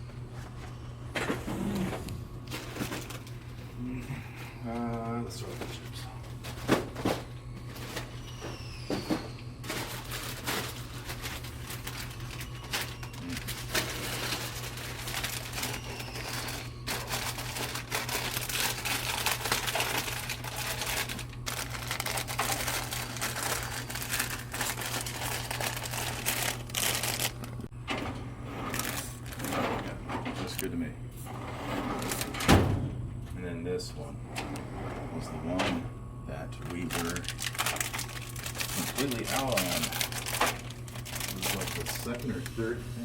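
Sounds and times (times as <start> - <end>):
low steady hum: 0.0 - 43.0
chip bags crinkling: 9.6 - 27.7, 28.6 - 30.7, 36.6 - 42.6.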